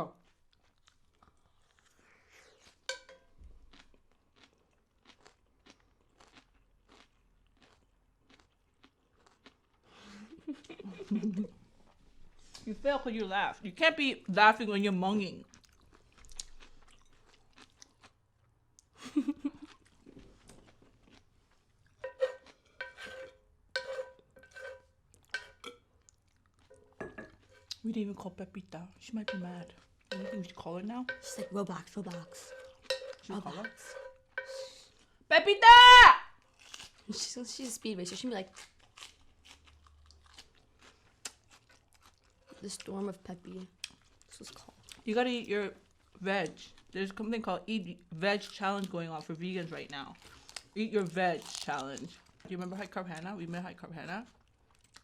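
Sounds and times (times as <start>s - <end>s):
quiet chewing with mouth clicks: 0.1s - 3.0s, 3.6s - 12.7s, 15.4s - 23.0s, 38.5s - 42.9s, 43.5s - 45.1s, 50.1s - 50.8s, 54.2s - 55.0s
cutlery scraping a ceramic dish: 2.9s - 3.2s, 22.0s - 25.8s, 26.7s - 27.7s, 30.1s - 34.8s.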